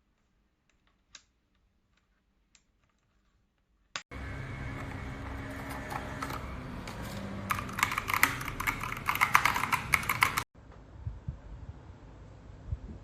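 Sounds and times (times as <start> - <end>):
mechanical keyboard typing: 7.4 - 10.5.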